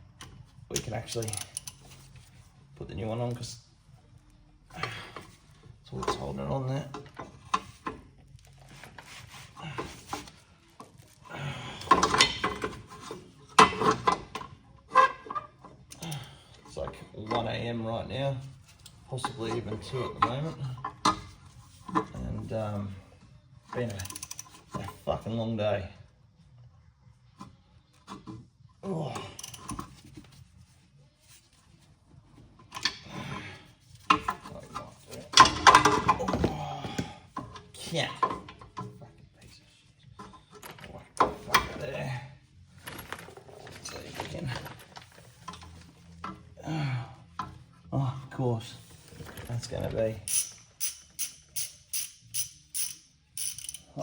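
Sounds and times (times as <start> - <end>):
metal tools clinking and scraping: 0.7 - 2.2, 49.1 - 54.0.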